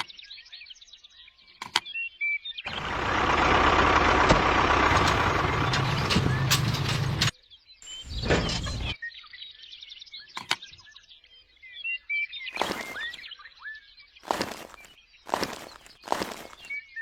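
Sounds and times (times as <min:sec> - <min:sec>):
small birds chirping: 0:00.0 - 0:03.0, 0:04.9 - 0:17.0
sharp click: 0:10.4 - 0:10.6.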